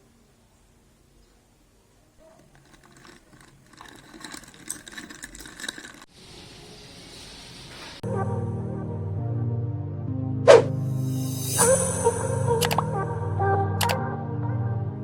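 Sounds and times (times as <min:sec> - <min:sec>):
ice cubes clinking in a glass: 0:02.4 - 0:06.1.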